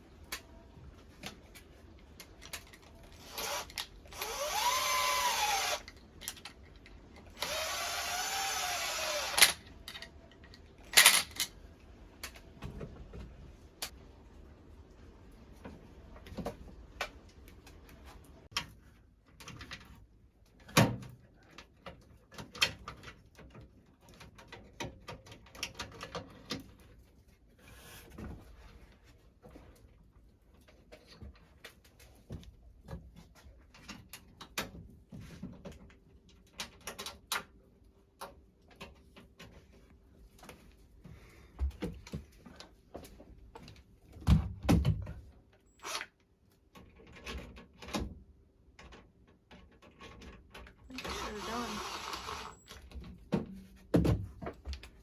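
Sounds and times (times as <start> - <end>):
clicks and knocks of hand work: 15.5 - 51.0.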